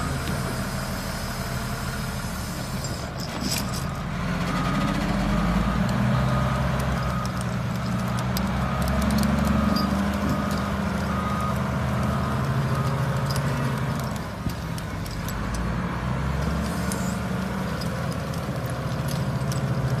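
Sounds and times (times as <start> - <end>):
diesel engine under load: 0.0 - 20.0
backup alarm beeping: 9.6 - 13.6.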